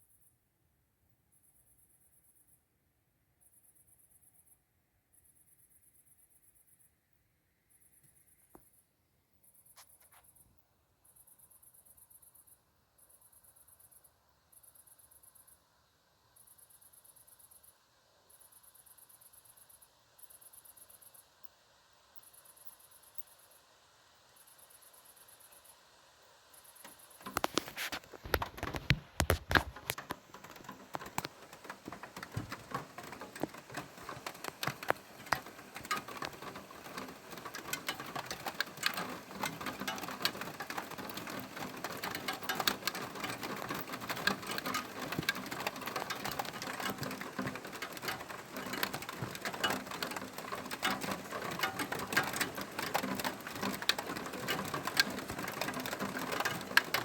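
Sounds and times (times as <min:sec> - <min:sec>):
rain pattering on hard surface: 0:26.5 - 0:57.0.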